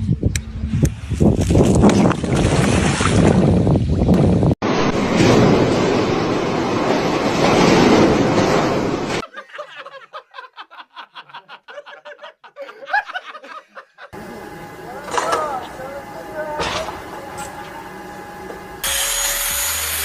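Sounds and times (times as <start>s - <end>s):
loud rushing noise: 4.6s - 9.2s
person laughing: 9.2s - 14.2s.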